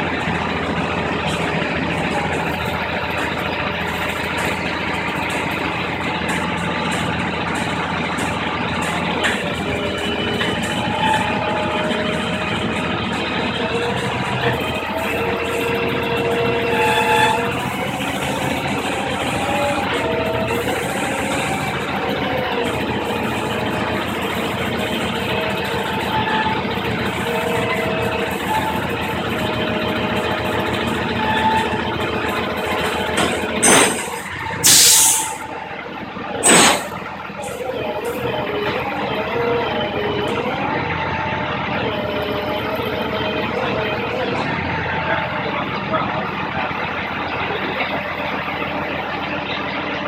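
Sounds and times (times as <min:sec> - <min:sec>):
vehicle-like drone: 0:00.0 - 0:50.0
short loud hisses: 0:34.6 - 0:35.4.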